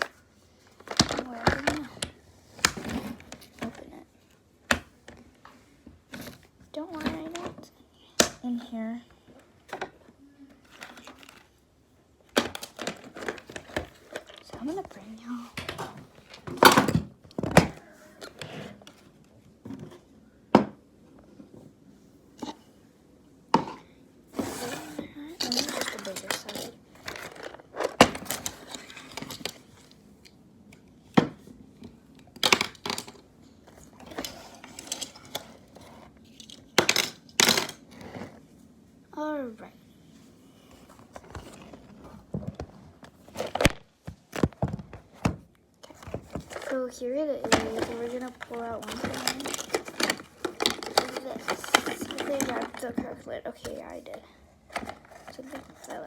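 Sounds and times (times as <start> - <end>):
knocks and thumps of objects: 15.6 - 18.7, 19.6 - 21.8, 23.5 - 28.6, 41.1 - 46.7, 47.4 - 53.8
objects clicking and knocking: 25.4 - 30.4, 31.1 - 38.3, 47.4 - 56.0.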